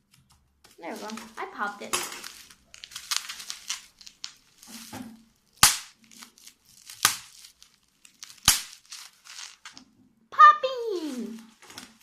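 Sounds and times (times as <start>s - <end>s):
bubble wrap popping: 0.7s - 9.9s, 10.6s - 12.0s
plastic crinkling: 0.7s - 9.9s, 10.7s - 12.0s.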